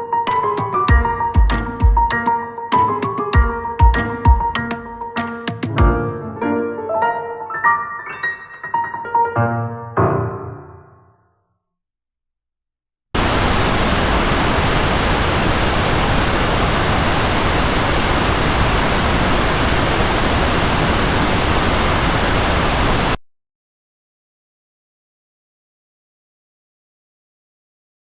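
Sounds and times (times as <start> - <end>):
pink noise hiss: 13.2 - 23.2.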